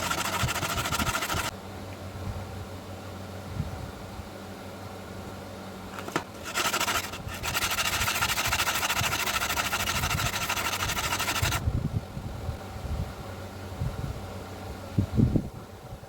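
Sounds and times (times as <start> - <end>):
metal grinding on abrasive: 0.0 - 1.5, 6.1 - 11.6
motor hum: 0.0 - 2.4, 5.9 - 11.6.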